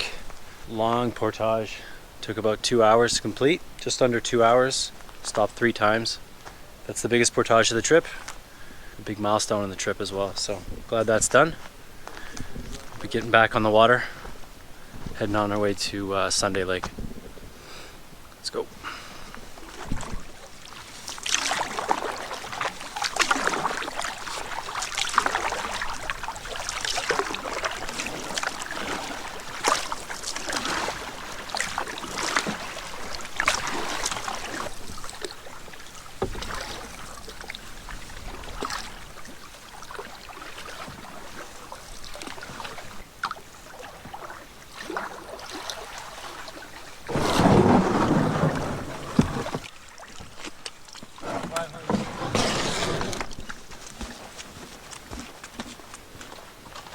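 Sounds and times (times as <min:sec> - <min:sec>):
deep water rush: 0:00.0 - 0:16.8, 0:18.6 - 0:54.4
paddle swishing in water: 0:18.7 - 0:56.9.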